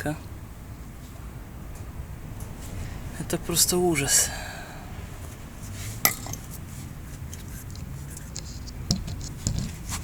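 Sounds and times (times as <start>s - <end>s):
hard parts clinking and scraping: 6.0s - 6.6s.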